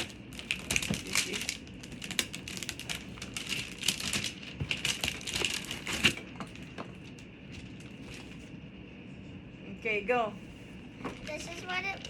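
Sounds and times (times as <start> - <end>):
packaging crinkling and rustling: 0.0 - 8.5, 11.0 - 12.0.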